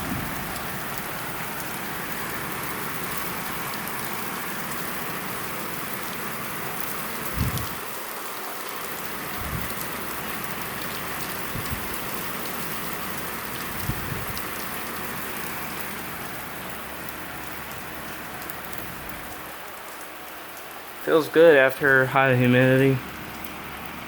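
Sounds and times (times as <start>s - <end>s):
heavy rain pouring: 0.0s - 24.0s
soft low thumps: 9.4s - 9.7s.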